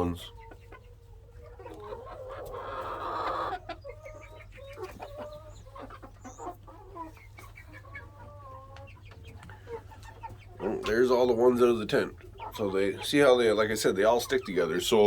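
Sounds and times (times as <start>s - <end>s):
chickens clucking: 0.0s - 15.0s
loud raspy chicken call: 1.4s - 10.9s.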